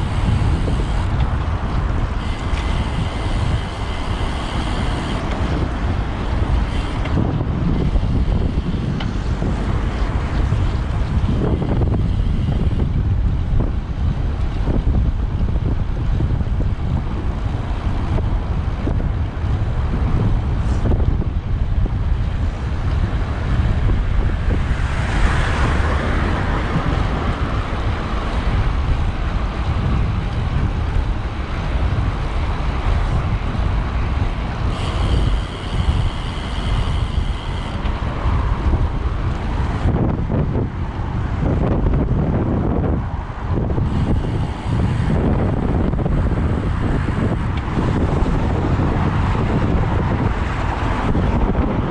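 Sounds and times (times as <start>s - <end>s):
faint high whine: 0.0s - 1.2s, 2.2s - 5.3s, 34.7s - 38.1s
passing traffic rush: 0.0s - 51.9s
road and traffic rumble: 0.0s - 51.9s
wind buffeting microphone: 0.0s - 51.9s.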